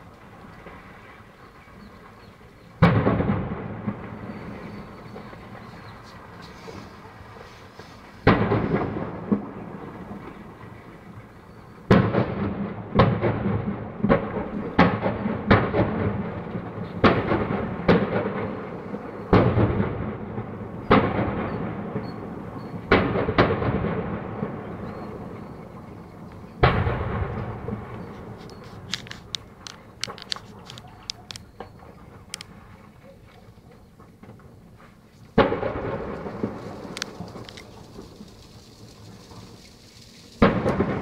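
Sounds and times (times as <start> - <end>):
explosions with rolling rumble: 2.7 - 6.4, 8.1 - 30.6, 35.4 - 41.0.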